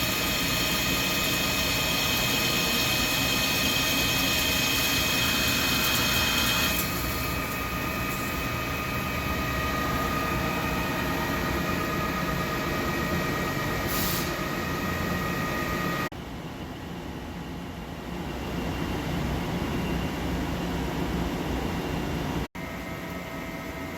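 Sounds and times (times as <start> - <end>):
lathe machine whining: 0.0 - 16.1.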